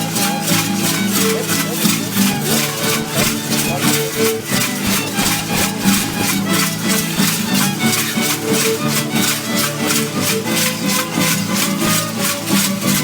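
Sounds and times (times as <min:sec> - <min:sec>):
rhythmic rattle shaking: 0:00.0 - 0:13.0
dance music melody: 0:02.4 - 0:07.6.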